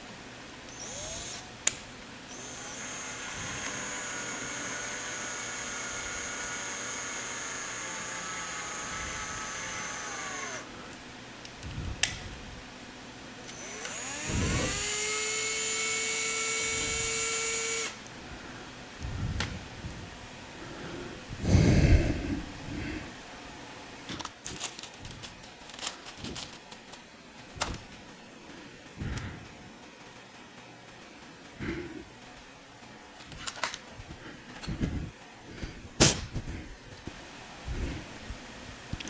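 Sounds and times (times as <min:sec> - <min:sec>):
electric drill whining: 0:00.7 - 0:10.8, 0:13.4 - 0:18.1.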